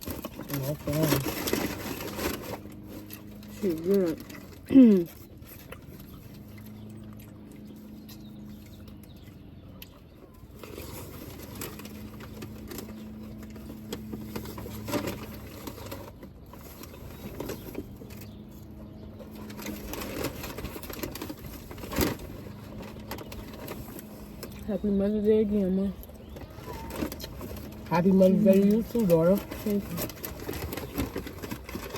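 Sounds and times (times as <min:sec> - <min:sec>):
chewing and mouth clicks: 0:04.3 - 0:11.2.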